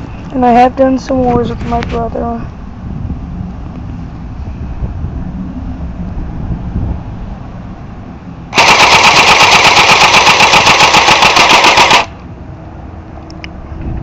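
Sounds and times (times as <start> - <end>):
airsoft gun full-auto burst: 8.5 - 12.2.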